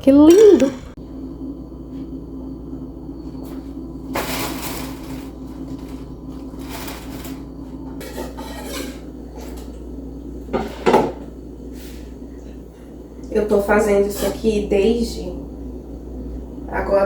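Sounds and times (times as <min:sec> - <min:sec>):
utensils and dishes clinking: 0:04.2 - 0:09.8.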